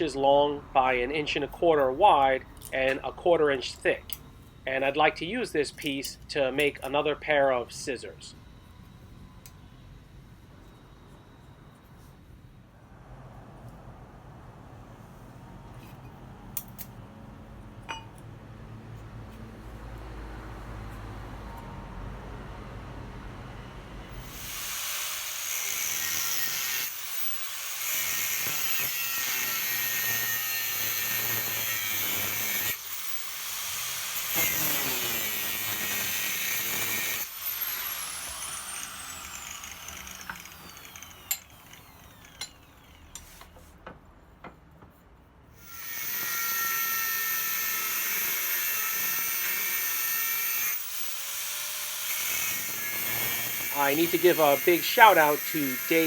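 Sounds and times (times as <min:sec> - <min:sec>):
electric power tool whining: 0:24.1 - 0:43.5, 0:45.6 - 0:56.0.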